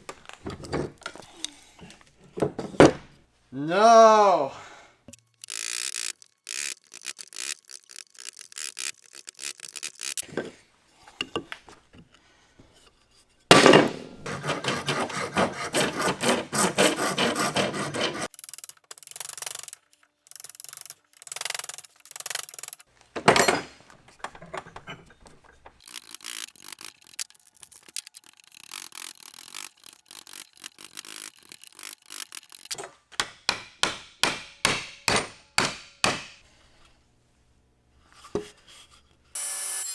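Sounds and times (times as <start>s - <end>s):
filing and rasping wood: 5.4s - 10.2s, 14.3s - 19.6s, 25.8s - 36.4s
hand saw sawing wood: 5.4s - 10.2s, 14.3s - 18.5s, 25.8s - 36.4s.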